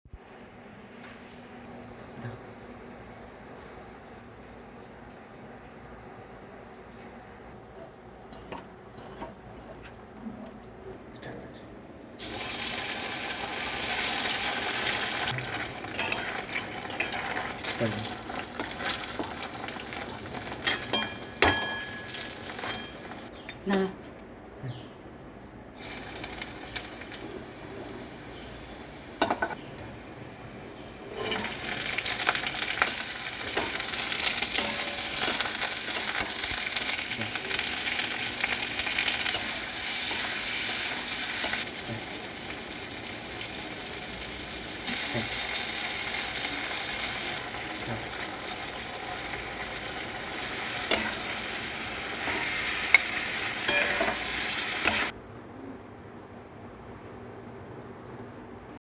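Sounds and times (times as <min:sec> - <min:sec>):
food sizzling in a pan: 0:12.2 - 0:23.3, 0:25.8 - 0:55.1.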